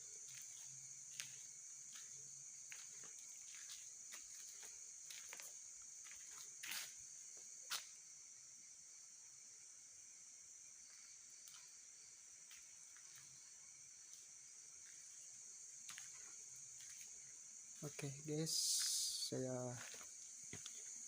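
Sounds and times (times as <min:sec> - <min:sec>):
night insects chorus: 0:00.0 - 0:21.0
short scuffs: 0:06.6 - 0:07.0.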